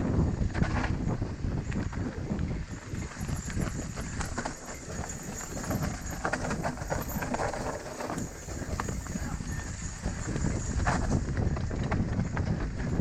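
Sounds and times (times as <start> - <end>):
bike rattling and knocking: 2.8 - 13.0.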